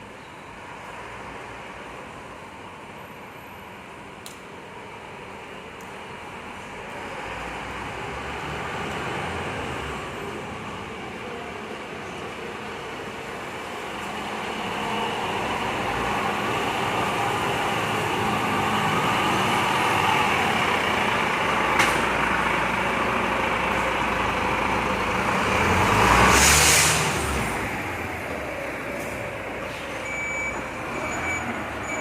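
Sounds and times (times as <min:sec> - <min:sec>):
truck diesel engine running: 0:14.3 - 0:25.9
loud air hiss: 0:26.4 - 0:27.4.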